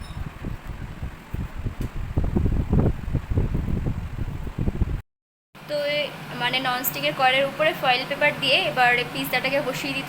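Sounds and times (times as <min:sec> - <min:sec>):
wind buffeting microphone: 0:00.0 - 0:05.0.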